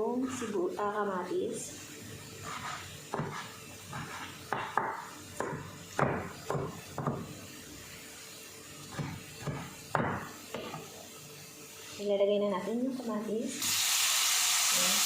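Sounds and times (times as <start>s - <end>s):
knife knocking on cutting board: 8.9s - 10.8s.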